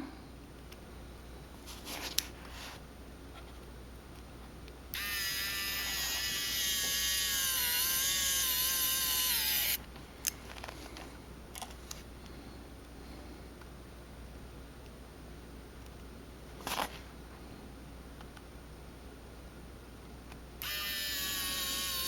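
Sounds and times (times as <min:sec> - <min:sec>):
electric screwdriver whining: 0:05.0 - 0:09.8, 0:20.6 - 0:22.0.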